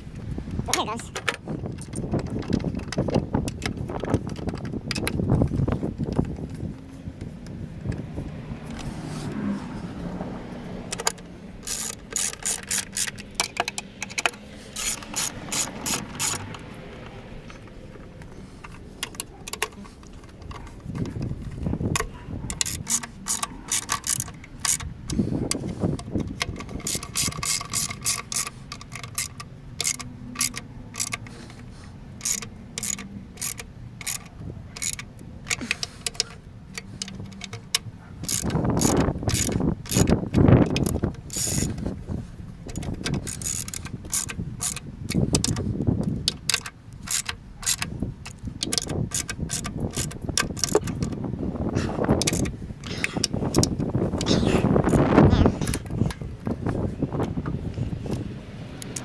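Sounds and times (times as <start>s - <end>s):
tools and parts knocking: 0.5s - 9.0s, 10.9s - 58.2s
socket ratchet clicking: 10.6s - 59.0s.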